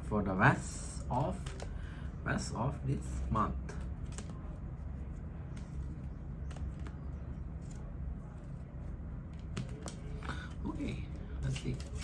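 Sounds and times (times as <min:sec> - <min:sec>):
steady low hum: 0:00.0 - 0:12.0
cards clicking: 0:01.2 - 0:01.8, 0:03.7 - 0:04.4, 0:05.5 - 0:07.8, 0:09.4 - 0:12.0.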